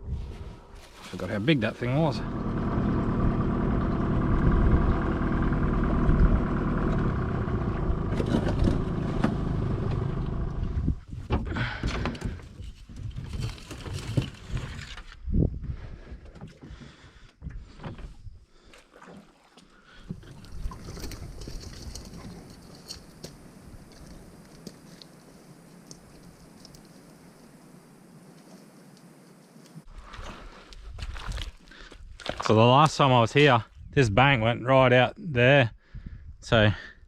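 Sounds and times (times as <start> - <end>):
rustling: 0.2 - 1.4, 12.6 - 15.2
vehicle engine idling: 1.2 - 11.0.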